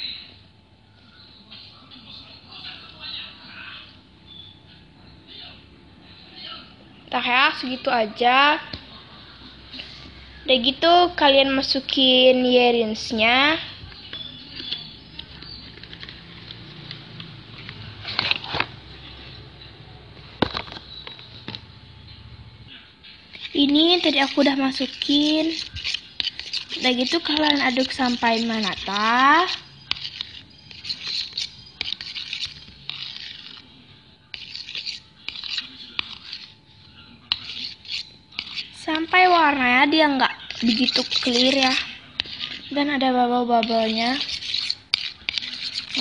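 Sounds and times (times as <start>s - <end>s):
utensil scraping container: 14.2s - 17.0s, 23.3s - 36.5s, 37.3s - 46.0s.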